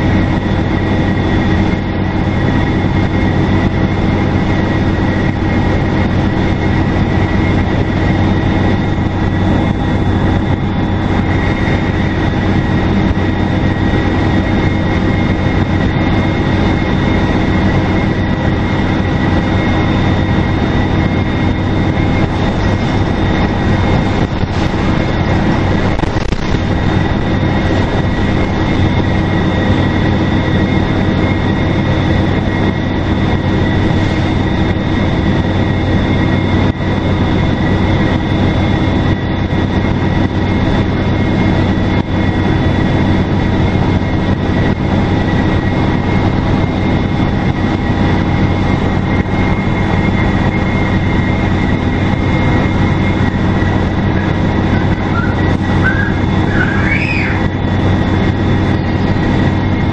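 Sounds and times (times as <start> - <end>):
bus diesel engine drone: 0.0 - 59.9
road noise: 0.0 - 59.9
turbocharger whistle: 53.1 - 57.9.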